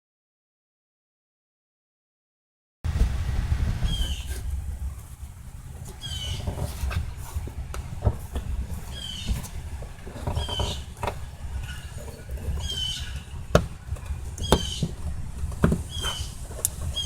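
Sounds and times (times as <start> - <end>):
steady low rumble: 2.9 - 17.0
bird chirping: 3.8 - 4.4, 5.9 - 6.7, 8.8 - 9.5, 10.1 - 17.0
sharp clicks and knocks: 5.8 - 17.0.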